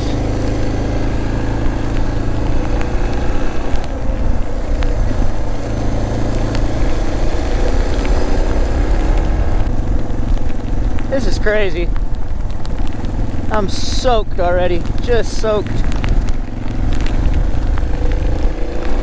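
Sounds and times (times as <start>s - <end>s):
motorcycle engine running: 0.0s - 19.0s
road noise on wet road: 0.0s - 19.0s
wind noise: 0.0s - 19.0s
light ticks: 6.2s - 11.1s, 11.9s - 19.0s.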